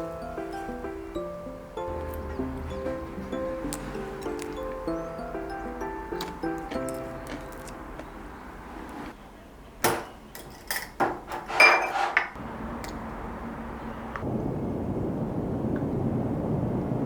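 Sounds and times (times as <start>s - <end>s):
steady hiss: 0.0s - 6.2s
dishes and cutlery clinking: 1.8s - 5.1s, 5.8s - 8.3s, 9.8s - 12.4s.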